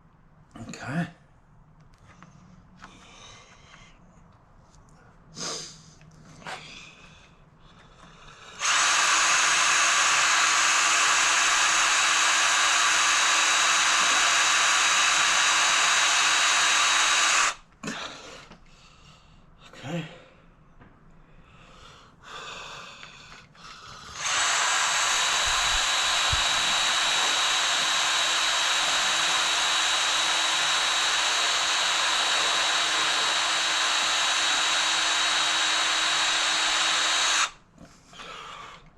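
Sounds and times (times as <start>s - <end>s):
electric drill whining: 8.4s - 17.6s, 24.1s - 37.6s.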